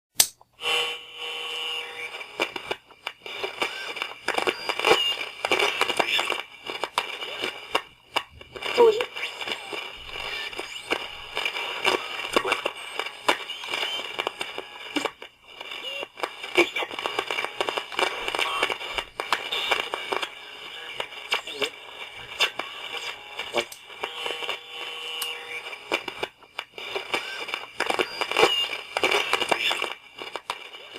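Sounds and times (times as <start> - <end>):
radio static crackling: 0.6 - 30.9
whistling tones between stations: 1.8 - 6.4, 9.1 - 14.9, 26.8 - 29.9
whistling tones: 13.3 - 14.2.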